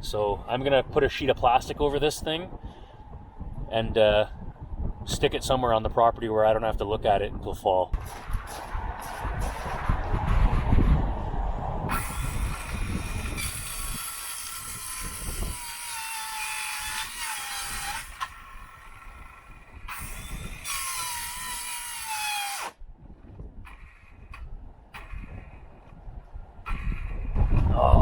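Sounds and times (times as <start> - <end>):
cordless drill motor whine: 11.9 - 22.8.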